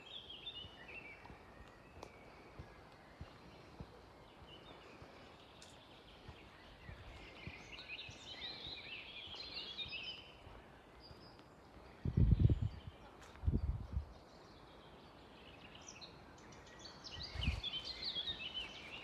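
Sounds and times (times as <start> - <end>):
faint outdoor background noise: 0.0 - 19.0
songbird twittering: 0.0 - 19.0.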